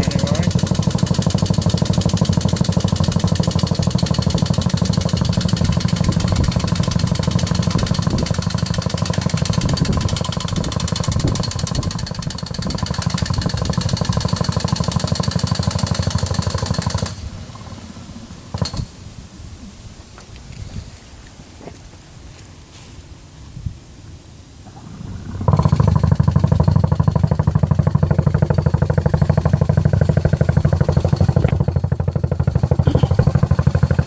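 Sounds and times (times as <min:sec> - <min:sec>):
boring tool hammering rapidly: 0:00.0 - 0:17.2, 0:25.5 - 0:34.0.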